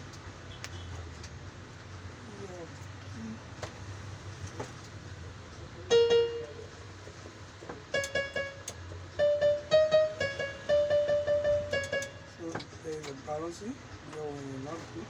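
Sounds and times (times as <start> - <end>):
keyboard notes repeated: 5.9 - 6.7, 7.9 - 12.4.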